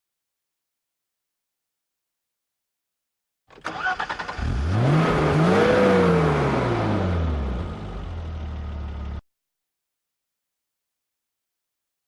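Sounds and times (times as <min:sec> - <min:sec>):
car engine starter cranking: 0:03.5 - 0:05.0
car engine revving and idling: 0:03.6 - 0:09.2.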